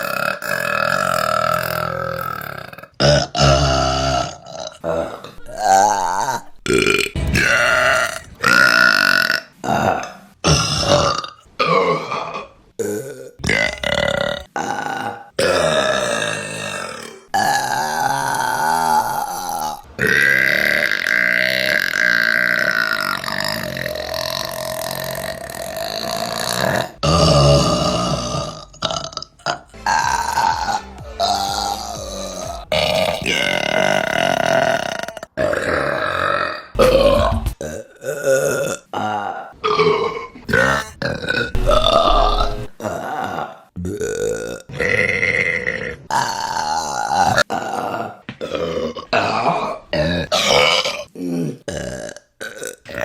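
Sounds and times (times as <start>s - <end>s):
woman burping: 0.0s - 53.0s.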